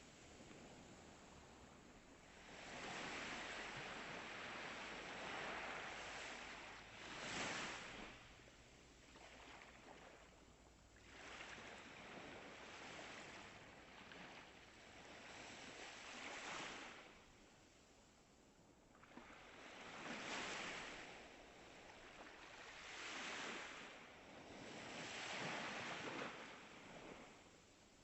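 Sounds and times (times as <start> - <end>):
ocean waves breaking: 0.0 - 8.2.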